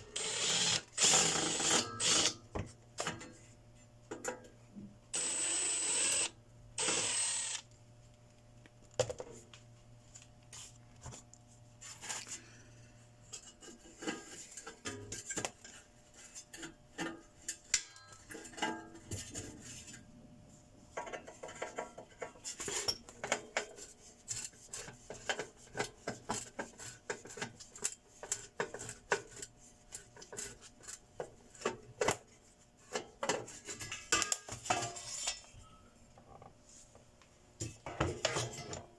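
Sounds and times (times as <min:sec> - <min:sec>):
metal tools clinking and scraping: 0:33.4 - 0:35.9.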